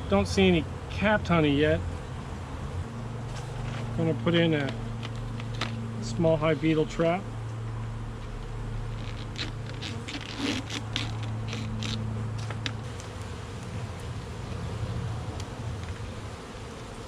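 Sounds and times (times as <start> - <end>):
honeybees buzzing: 0.0 - 17.0
hive equipment clicks and scrapes: 3.3 - 5.8, 8.2 - 14.1.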